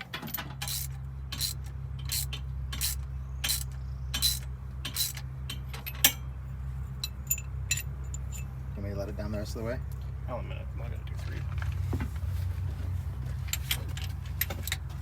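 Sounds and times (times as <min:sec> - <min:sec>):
metal bolts clinking: 0:00.0 - 0:06.3, 0:07.0 - 0:08.5, 0:13.4 - 0:15.0.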